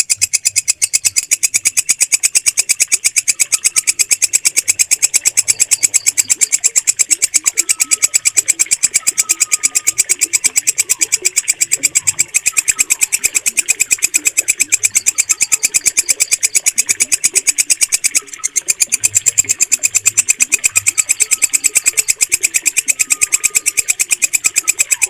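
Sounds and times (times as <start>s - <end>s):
bush cricket chirping: 0.1s - 18.2s.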